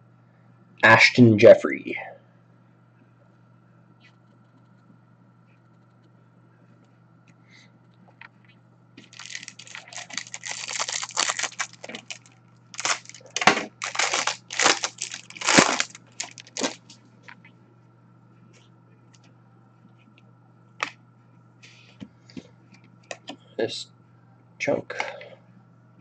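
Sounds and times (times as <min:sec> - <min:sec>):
wrapper being torn and crinkled: 0:09.0 - 0:17.0.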